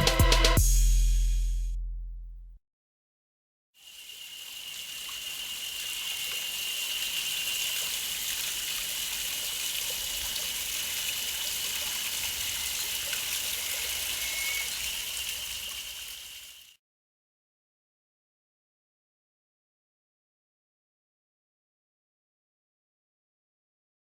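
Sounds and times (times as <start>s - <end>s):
running water: 3.8s - 16.8s
thin high tone: 12.2s - 16.2s.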